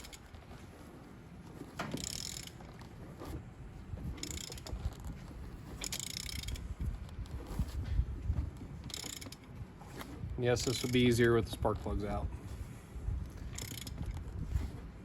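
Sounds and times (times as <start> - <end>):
socket ratchet clicking: 2.0 - 2.5, 4.2 - 4.8, 5.8 - 6.7, 8.8 - 9.5, 13.5 - 14.1.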